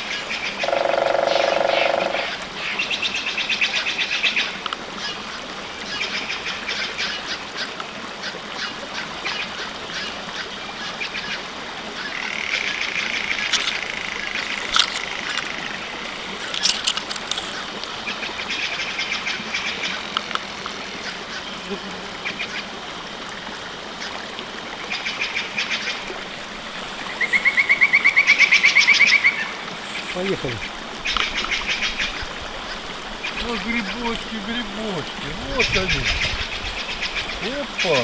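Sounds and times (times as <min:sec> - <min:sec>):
birds trilling: 0:00.3 - 0:03.2, 0:12.0 - 0:21.6, 0:24.9 - 0:38.0.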